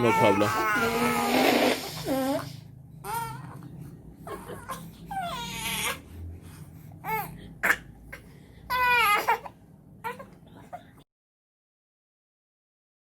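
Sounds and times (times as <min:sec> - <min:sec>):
babies crying: 0:00.0 - 0:03.6, 0:04.3 - 0:06.0, 0:08.7 - 0:10.4.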